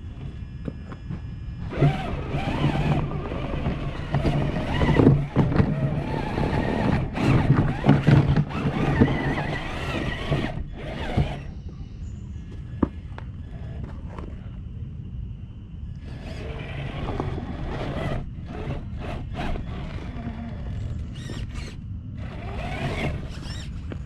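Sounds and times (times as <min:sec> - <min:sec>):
rc car motor running: 0:01.6 - 0:11.6, 0:16.0 - 0:24.0.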